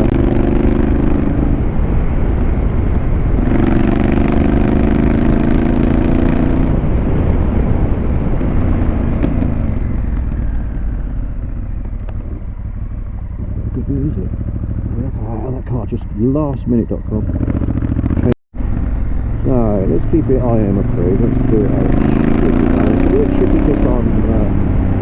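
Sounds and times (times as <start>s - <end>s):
low wind rumble: 0.0s - 25.0s
motorcycle engine accelerating: 0.0s - 25.0s.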